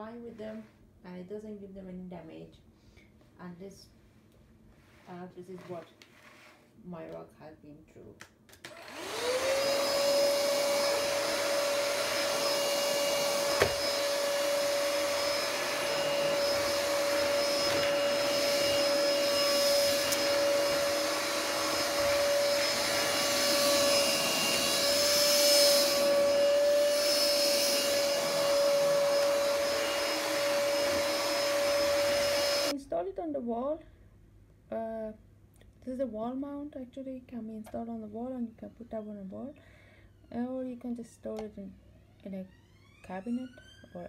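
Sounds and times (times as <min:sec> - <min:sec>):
stick vacuum cleaner motor whine: 0:08.6 - 0:32.7.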